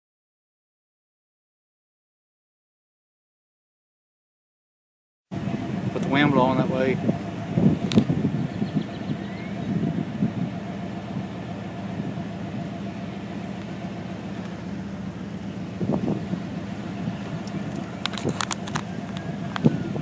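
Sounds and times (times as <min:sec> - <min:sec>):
vehicle engine idling: 0:05.3 - 0:20.0.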